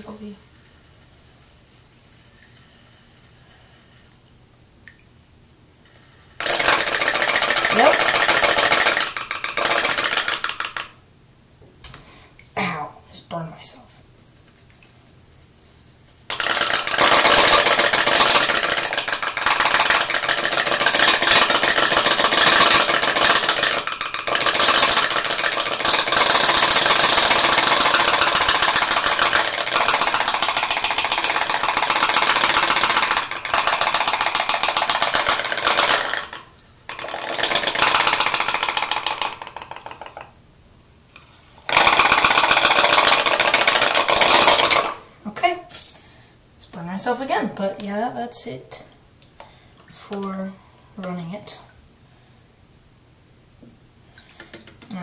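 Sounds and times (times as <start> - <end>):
pop-pop steam engine popping: 6.4 - 10.9, 16.3 - 40.3, 41.7 - 45.0.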